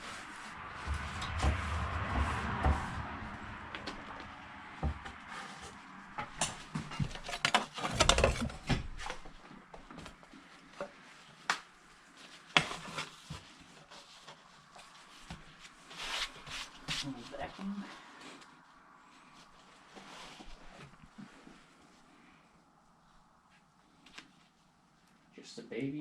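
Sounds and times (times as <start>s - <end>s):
debris knocking and rustling: 0.7s - 9.4s.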